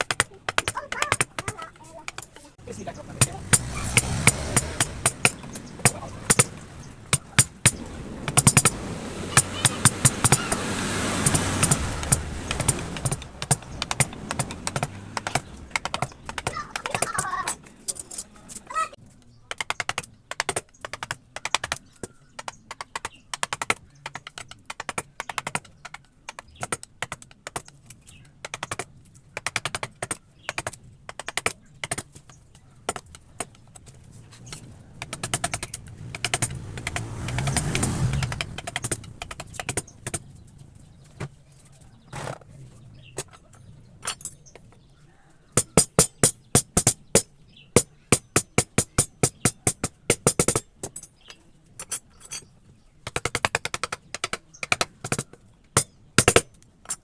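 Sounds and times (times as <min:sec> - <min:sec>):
low rumbling noise: 0:02.6 - 0:15.8
chisels struck with a mallet: 0:03.2 - 0:08.8, 0:11.2 - 0:17.3, 0:35.0 - 0:40.3, 0:45.6 - 0:51.0, 0:53.0 - 0:57.0.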